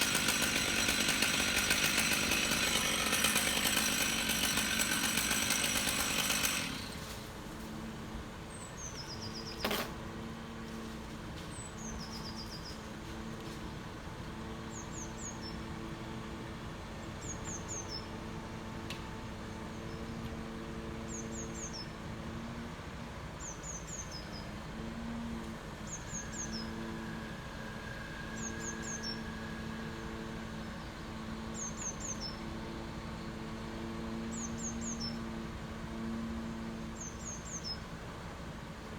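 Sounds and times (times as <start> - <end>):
bird singing: 25.8 - 27.0, 28.2 - 29.8, 34.2 - 35.3.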